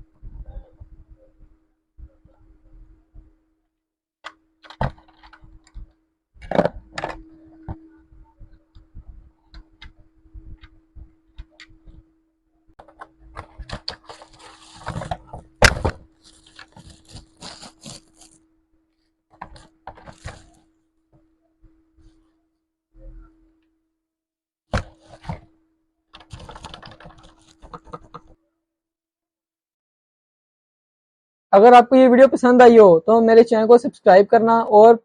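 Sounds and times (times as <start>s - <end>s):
faint steady hum: 0.0s - 24.0s
packaging rustling: 13.3s - 18.4s, 19.4s - 20.6s, 26.2s - 28.1s.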